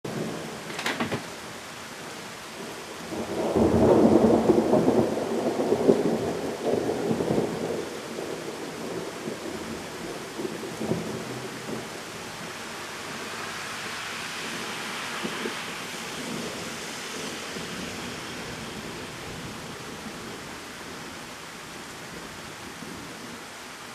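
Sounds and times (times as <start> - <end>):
pouring rain: 0.0 - 23.9
thunder rolling: 2.6 - 21.2.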